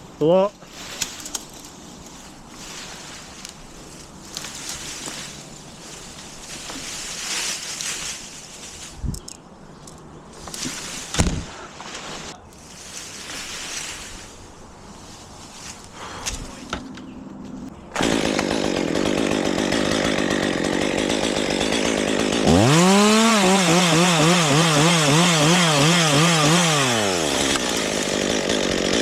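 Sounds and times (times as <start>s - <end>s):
chainsaw cutting wood: 17.9s - 29.0s.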